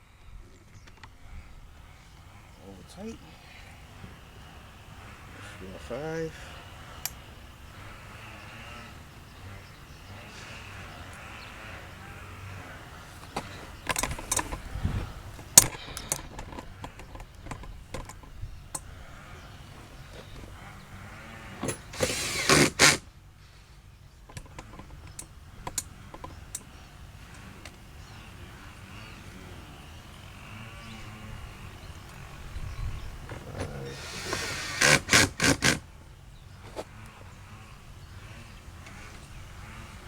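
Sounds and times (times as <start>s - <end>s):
noisy rattling: 0.9s - 23.1s, 24.2s - 40.0s
hand tools clicking on car door trim: 33.3s - 35.8s.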